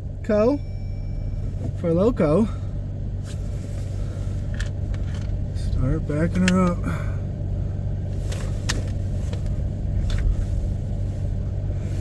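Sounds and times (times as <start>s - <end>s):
vehicle engine rumbling: 0.0s - 12.0s.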